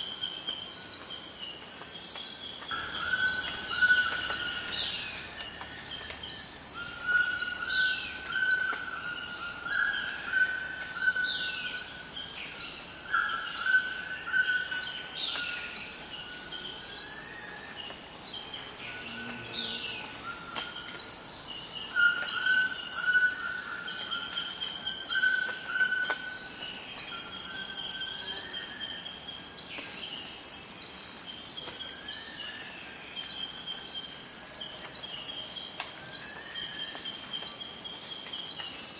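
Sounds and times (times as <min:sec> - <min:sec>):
high-pitched insect drone: 0:02.7 - 0:11.9.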